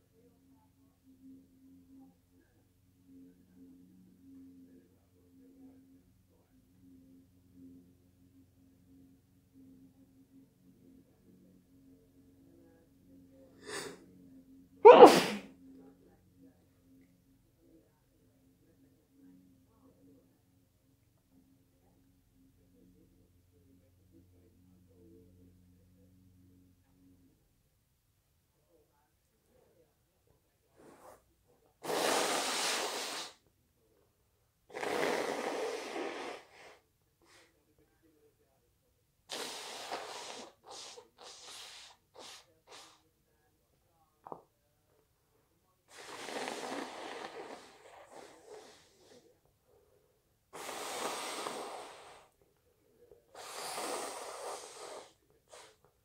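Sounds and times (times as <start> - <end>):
person sneezing: 13.6 - 14.0, 14.8 - 15.5, 31.8 - 33.4, 39.3 - 43.0.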